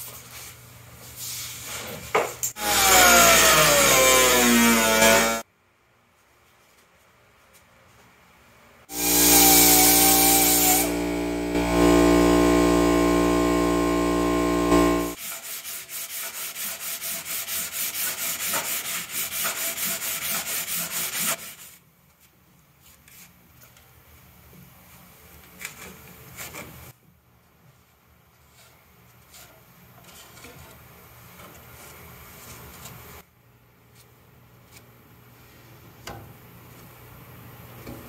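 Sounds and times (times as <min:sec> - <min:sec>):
power tool running: 0:02.6 - 0:05.4, 0:08.9 - 0:15.2
hand sanding fiberglass: 0:15.1 - 0:21.8.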